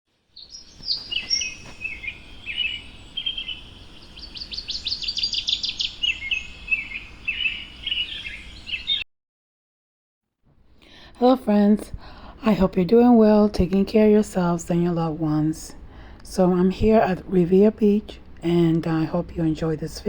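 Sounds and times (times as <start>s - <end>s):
small birds chirping: 0.3s - 9.0s.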